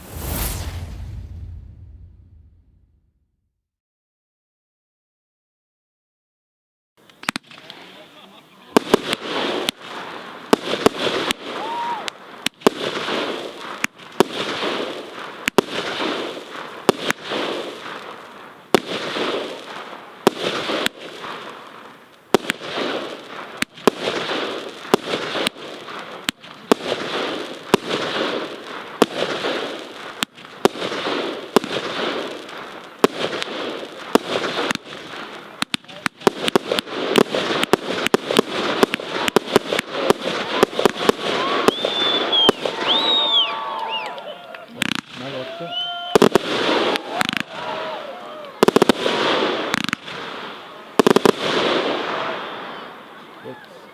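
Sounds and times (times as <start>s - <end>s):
firework hiss: 0.0s - 2.9s
firework battery shots: 0.0s - 3.1s, 8.8s - 44.0s, 46.1s - 48.0s, 48.6s - 52.8s.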